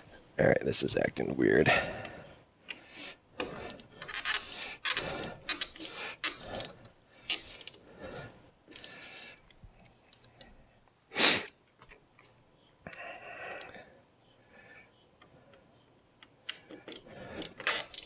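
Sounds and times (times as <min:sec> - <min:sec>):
metal hardware clicking and rattling: 0:03.4 - 0:07.8, 0:16.4 - 0:18.0.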